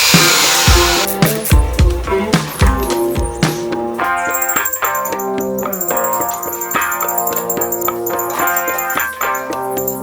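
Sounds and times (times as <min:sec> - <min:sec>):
music with steady drum beat: 0:00.0 - 0:10.0.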